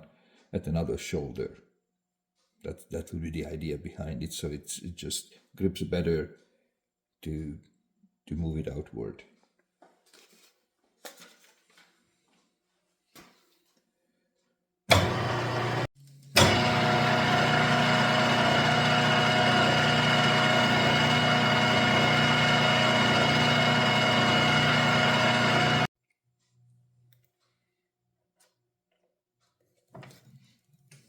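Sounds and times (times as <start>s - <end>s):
milling machine spindle motor whine: 14.9s - 25.9s.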